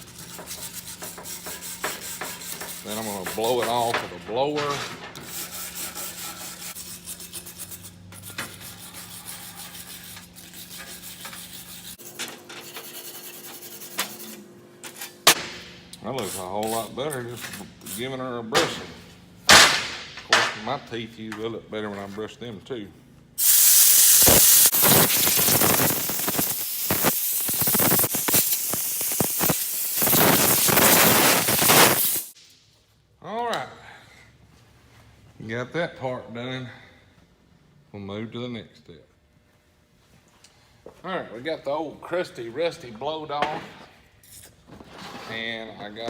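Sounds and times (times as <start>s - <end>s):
wire brush scraping rusty metal: 0.0s - 15.3s, 23.4s - 32.4s
air blower hissing: 23.4s - 32.4s.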